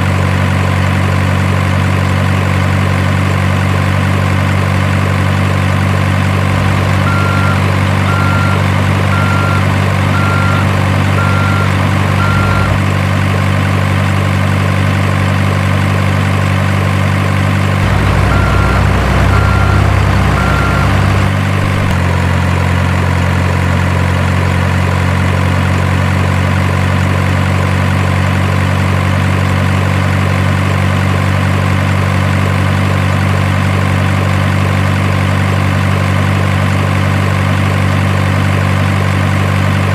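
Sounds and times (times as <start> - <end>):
diesel truck engine idling: 0.1 - 24.3
deep rumble: 6.1 - 12.9, 17.8 - 22.4
reversing beeper: 6.5 - 12.8, 17.8 - 22.0.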